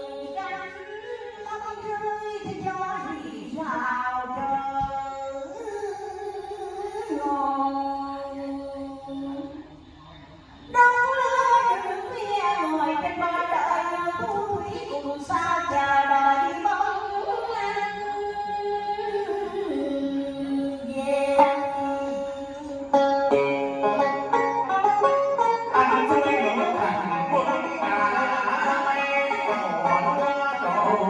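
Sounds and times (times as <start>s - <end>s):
plucked string instrumental music: 21.4s - 31.0s.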